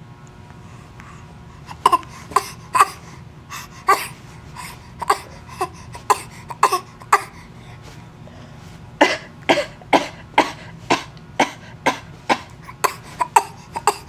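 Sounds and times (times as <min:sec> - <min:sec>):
person forced coughing: 0:01.8 - 0:03.0, 0:05.0 - 0:07.3, 0:09.0 - 0:14.0.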